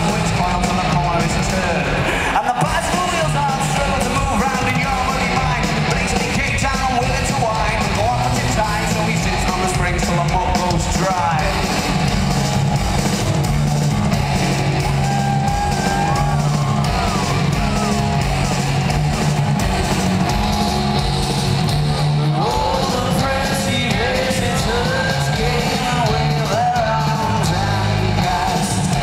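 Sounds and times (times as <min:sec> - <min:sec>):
live rock band playing: 0:00.0 - 0:29.0
person singing: 0:22.2 - 0:29.0.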